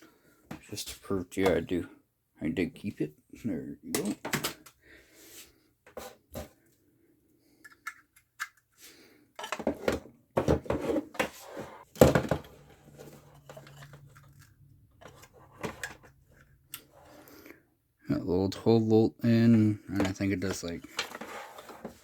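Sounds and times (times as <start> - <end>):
packaging rustling and clicking: 20.0 - 22.0.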